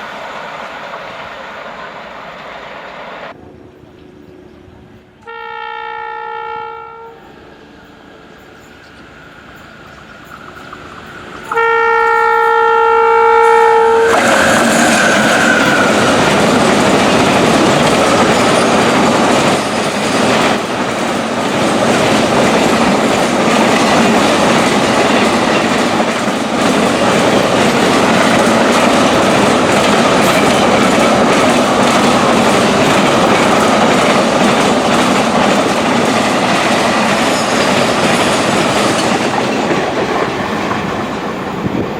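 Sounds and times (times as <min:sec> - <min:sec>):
train rumbling past: 0:00.0 - 0:41.9
hoarse locomotive horn: 0:05.2 - 0:07.7, 0:11.5 - 0:16.1
wheels clattering over rail joints: 0:14.1 - 0:41.8.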